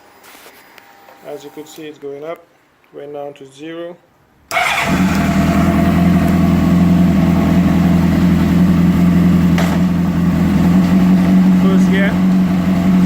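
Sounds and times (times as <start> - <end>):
motorcycle engine idling: 4.6 - 13.0.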